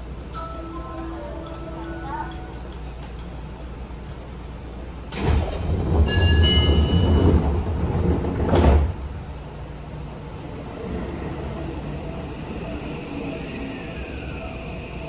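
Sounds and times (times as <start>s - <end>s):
train doors rumbling shut: 5.1s - 15.0s.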